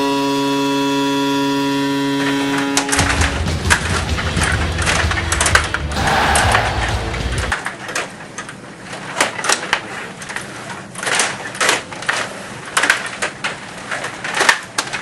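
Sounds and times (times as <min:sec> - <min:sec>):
table hockey plastic clatter: 0:09.2 - 0:15.0.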